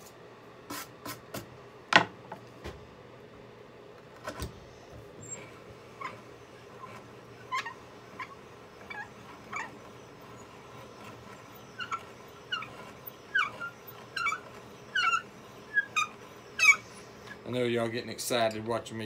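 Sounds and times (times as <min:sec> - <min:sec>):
hand brace squeaking: 0:05.2 - 0:17.4.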